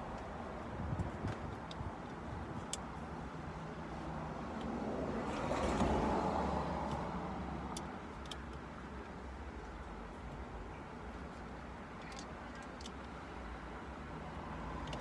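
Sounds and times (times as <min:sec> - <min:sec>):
road vehicle passing: 0:04.1 - 0:07.8.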